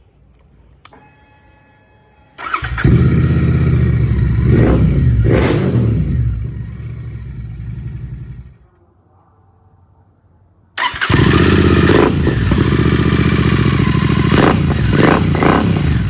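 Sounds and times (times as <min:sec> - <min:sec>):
click: 0:00.3 - 0:01.1
motorcycle engine revving and idling: 0:02.4 - 0:08.6, 0:10.8 - 0:16.0.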